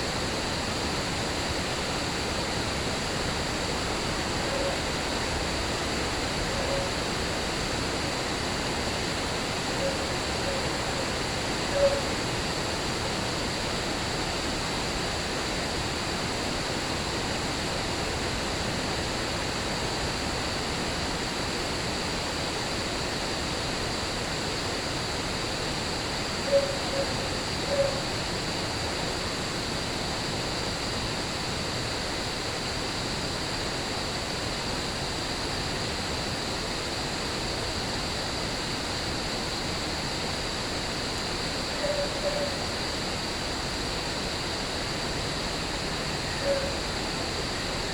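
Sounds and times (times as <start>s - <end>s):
cricket chorus: 0.0s - 47.9s
rain hiss: 0.0s - 47.9s
short mid-pitched calls: 11.7s - 12.2s, 26.4s - 28.1s, 41.7s - 42.6s, 46.3s - 46.9s.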